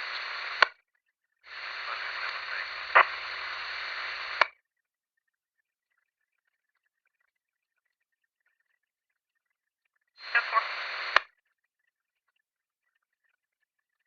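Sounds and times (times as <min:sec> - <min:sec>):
radio static hiss: 0:00.0 - 0:00.7, 0:01.5 - 0:04.5, 0:10.2 - 0:11.3
squelch click: 0:01.9 - 0:03.4, 0:04.0 - 0:04.5.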